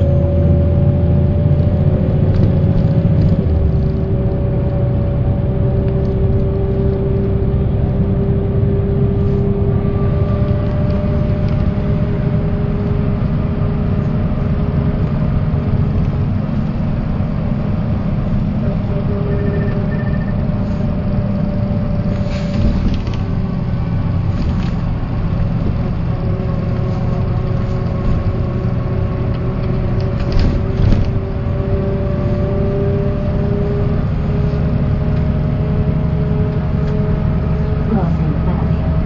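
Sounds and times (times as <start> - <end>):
bus diesel engine droning: 0.0 - 39.0
mid-pitched whine: 18.6 - 21.4.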